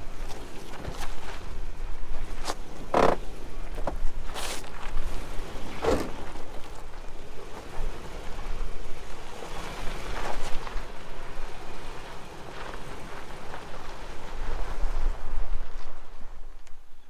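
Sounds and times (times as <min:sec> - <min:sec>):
tyres crunching over gravel: 0:00.0 - 0:08.0
rocks knocking under wheels: 0:02.3 - 0:07.0.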